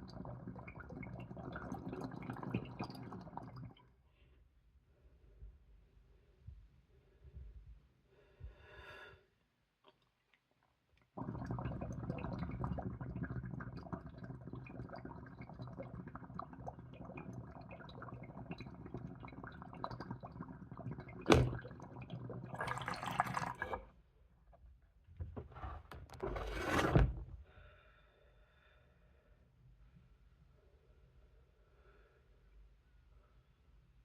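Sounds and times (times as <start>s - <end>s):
water bubbling through a bong: 0.0s - 3.8s, 11.1s - 23.9s.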